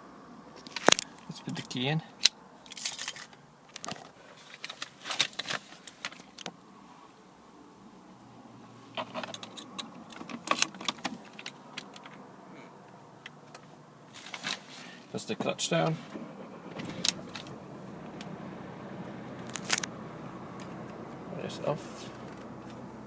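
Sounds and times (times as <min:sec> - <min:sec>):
car keys jangling: 0:02.6 - 0:03.4, 0:19.4 - 0:19.9.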